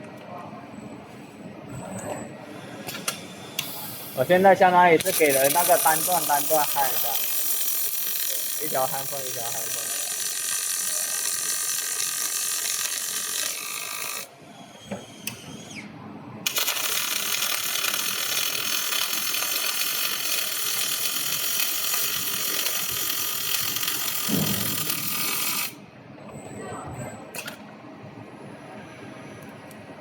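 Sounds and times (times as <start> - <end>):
welding arc crackling and hissing: 3.6 - 14.3, 16.5 - 25.8.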